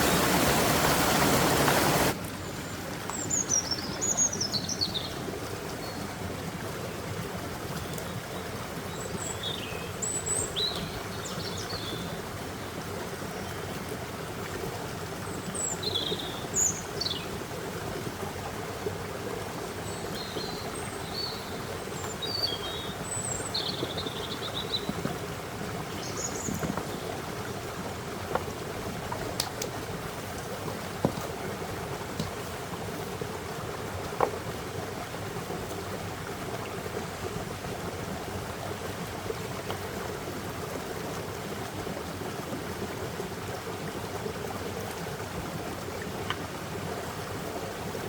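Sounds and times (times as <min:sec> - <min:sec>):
stream running: 0:00.0 - 0:48.0
small birds chirping: 0:01.0 - 0:06.1, 0:19.8 - 0:25.2, 0:25.8 - 0:27.4.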